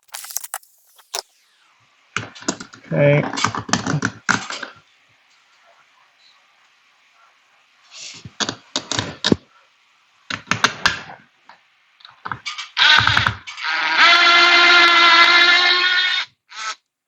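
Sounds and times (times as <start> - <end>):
power screwdriver running: 0.0 - 4.8.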